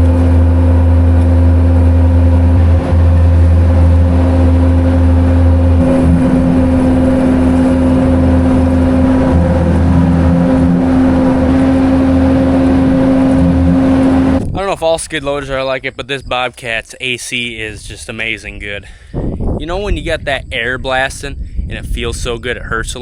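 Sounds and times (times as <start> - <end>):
diesel engine running: 0.0 - 14.6
steady whine: 0.0 - 16.1.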